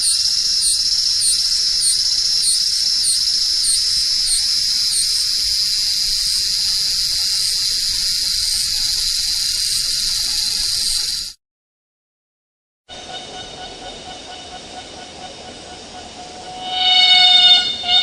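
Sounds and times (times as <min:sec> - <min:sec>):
cicada buzzing: 0:00.0 - 0:11.4, 0:13.0 - 0:18.0.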